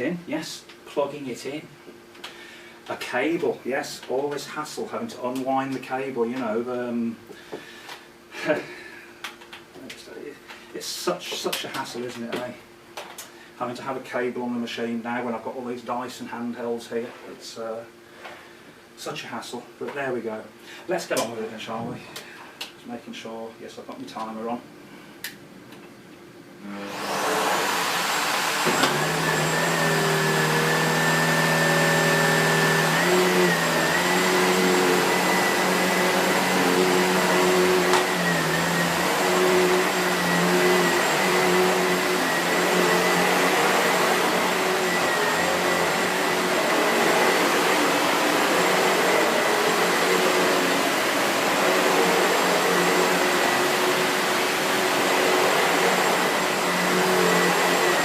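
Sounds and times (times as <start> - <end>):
vacuum cleaner running: 26.6 - 58.0.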